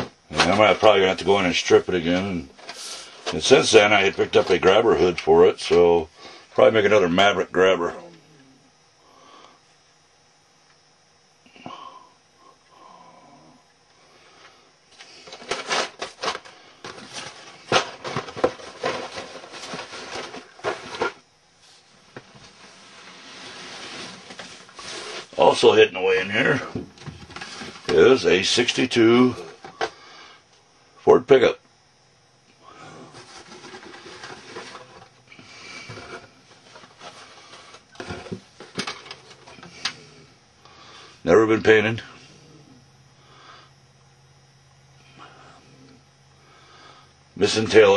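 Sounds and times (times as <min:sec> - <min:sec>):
boxes and plastic parts rustling: 0:00.0 - 0:05.8, 0:14.9 - 0:30.0, 0:32.9 - 0:40.0.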